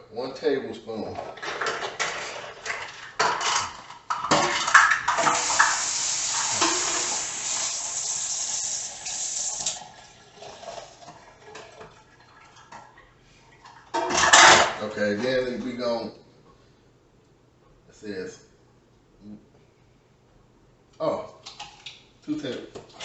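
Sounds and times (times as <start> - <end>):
utensils and dishes clinking: 1.3 - 7.4
kitchen tap running: 5.1 - 13.0.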